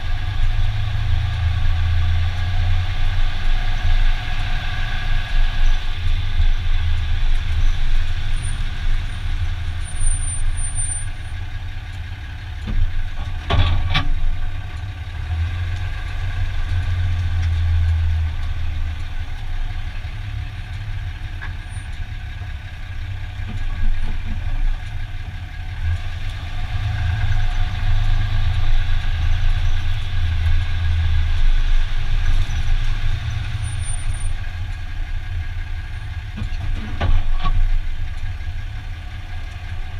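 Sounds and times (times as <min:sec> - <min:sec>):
drivetrain clunk: 0:12.7 - 0:14.6, 0:36.4 - 0:37.9.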